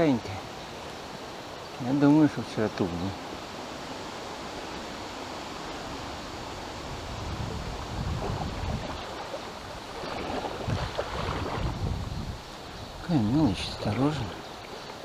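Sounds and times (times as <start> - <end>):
river rushing: 0.0 - 15.0
wind buffeting microphone: 6.0 - 14.5.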